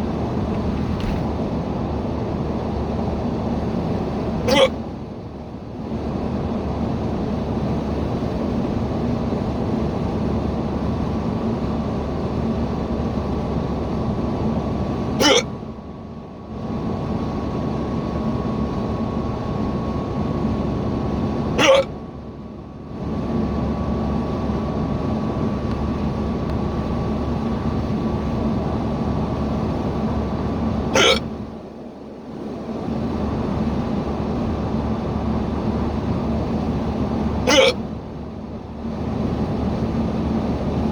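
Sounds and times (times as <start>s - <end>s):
car cabin road and engine noise: 0.0s - 40.9s
person hiccuping: 4.4s - 4.8s, 15.2s - 15.6s, 21.6s - 22.0s, 30.9s - 31.4s, 37.4s - 37.9s.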